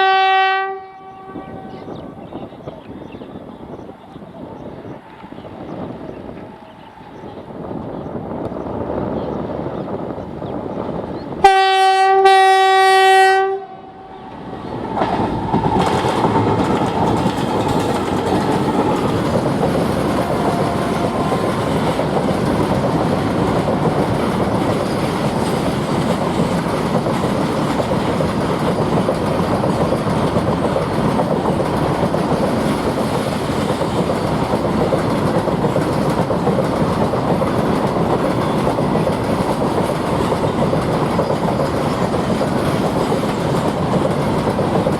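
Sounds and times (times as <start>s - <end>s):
locomotive horn: 0.0s - 2.0s, 11.4s - 14.5s
train wheels clattering over rail joints: 14.7s - 44.9s.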